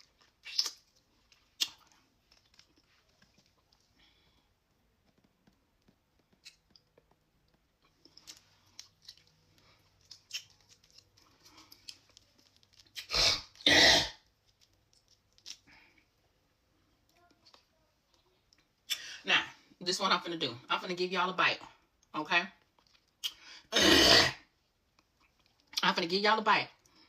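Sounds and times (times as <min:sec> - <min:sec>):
soft chewing and mouth clicks: 0:00.0 - 0:13.6, 0:14.2 - 0:19.0, 0:21.8 - 0:23.5, 0:24.6 - 0:25.8.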